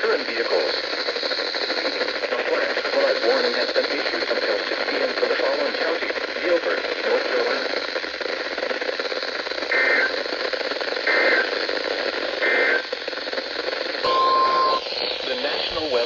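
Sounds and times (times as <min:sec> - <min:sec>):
radio receiver hiss: 0:00.0 - 0:16.0
buzzy data bursts: 0:14.0 - 0:16.0
steady warning alarm tone: 0:14.0 - 0:16.0.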